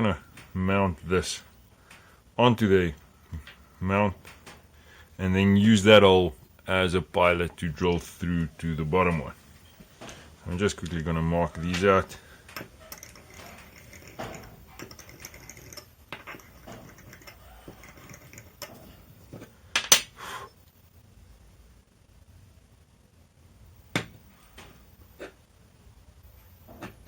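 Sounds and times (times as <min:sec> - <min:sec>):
tools scratching and clicking: 0:11.8 - 0:19.1.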